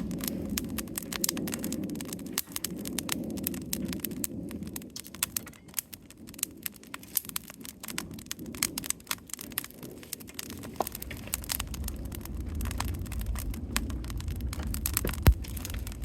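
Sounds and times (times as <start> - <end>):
wood fire crackling and popping: 0.0 - 16.0
low rumble: 12.2 - 16.0.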